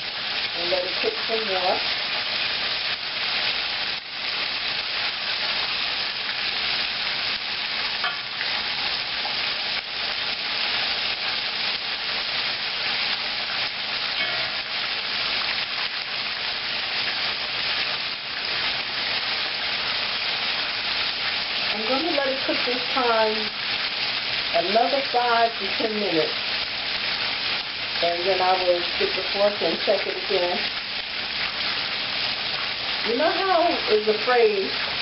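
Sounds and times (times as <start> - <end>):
chicken sizzling in hot oil: 0.0 - 35.0
fork clinking on pan: 8.0 - 8.3, 14.2 - 14.8.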